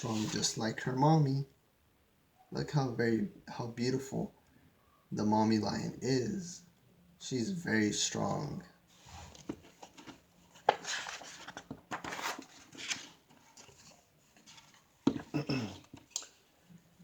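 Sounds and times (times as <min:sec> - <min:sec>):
book pages rustling: 0:09.0 - 0:16.4.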